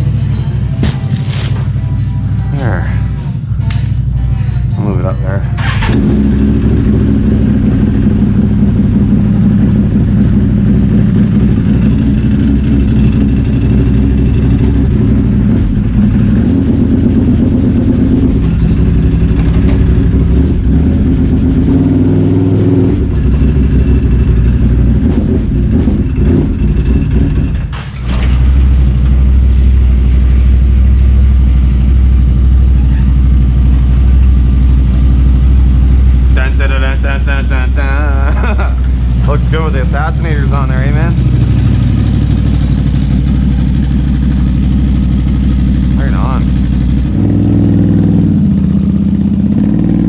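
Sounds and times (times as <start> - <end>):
snowmobile engine running: 35.7 - 50.0.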